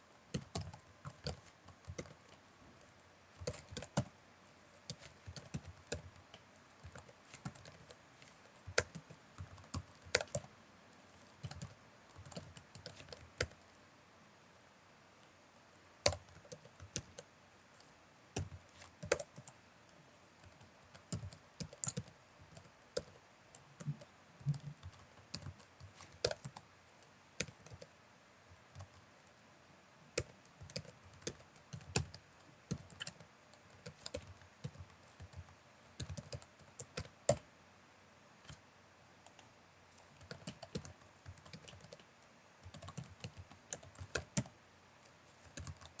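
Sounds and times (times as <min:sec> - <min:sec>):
typing on computer keyboard: 0:00.3 - 0:02.4, 0:03.4 - 0:04.1, 0:04.9 - 0:10.5, 0:11.2 - 0:13.6, 0:16.0 - 0:19.6, 0:20.4 - 0:26.6, 0:27.4 - 0:27.9, 0:28.7 - 0:29.0, 0:30.2 - 0:37.4, 0:39.2 - 0:46.0.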